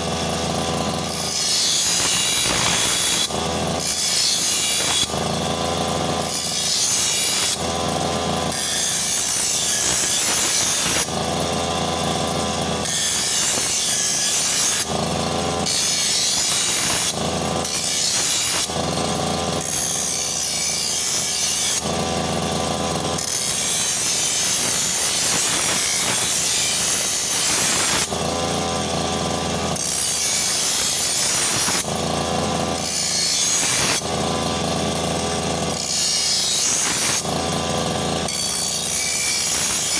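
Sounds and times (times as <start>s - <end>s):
brush cutter engine: 0.0s - 39.9s
harsh high hissing of cutting: 1.3s - 3.4s, 8.6s - 11.1s, 15.7s - 18.7s, 23.4s - 28.1s, 30.2s - 31.9s.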